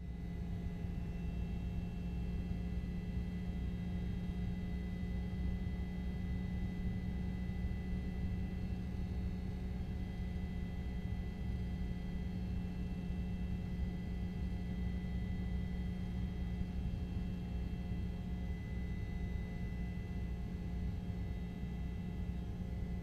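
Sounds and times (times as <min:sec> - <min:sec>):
electrical hum: 0:10.9 - 0:23.0.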